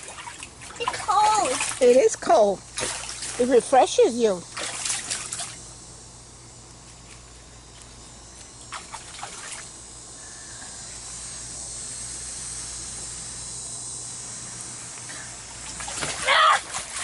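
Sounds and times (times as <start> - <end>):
water splashes: 0.0 - 3.8, 4.5 - 5.6, 8.7 - 9.7, 15.5 - 17.0.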